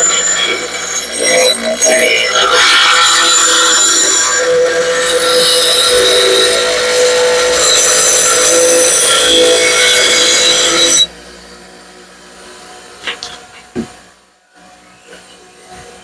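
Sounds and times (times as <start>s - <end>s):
metal grinding on grinding wheel: 0.0s - 11.1s
machine hum: 0.0s - 16.0s.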